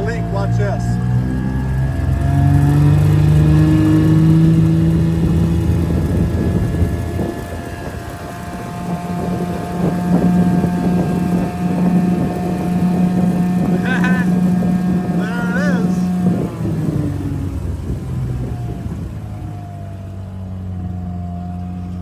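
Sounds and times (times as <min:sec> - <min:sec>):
outboard motor running: 0:00.0 - 0:22.0
wind noise: 0:02.5 - 0:19.6.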